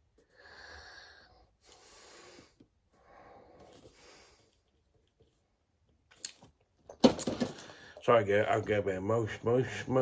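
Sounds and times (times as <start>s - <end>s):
man breathing heavily: 0.2s - 4.7s.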